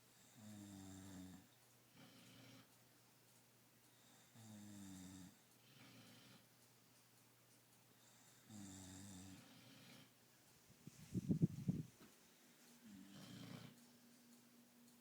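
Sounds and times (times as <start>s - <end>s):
faint slow snoring: 0.3s - 2.8s, 4.1s - 6.5s, 8.2s - 10.2s, 12.8s - 13.8s.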